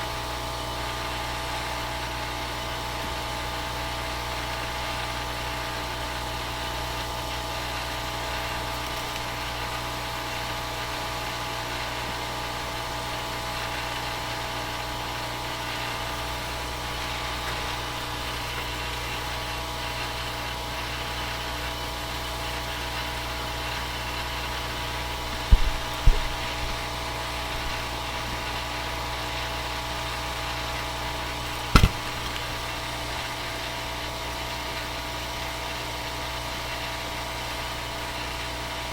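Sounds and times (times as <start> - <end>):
workshop hum: 24.5 - 29.3, 30.8 - 33.7.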